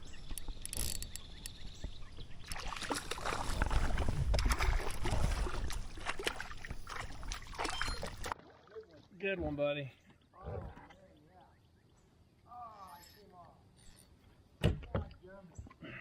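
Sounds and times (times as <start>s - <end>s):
water splashing and sloshing: 1.9s - 10.2s.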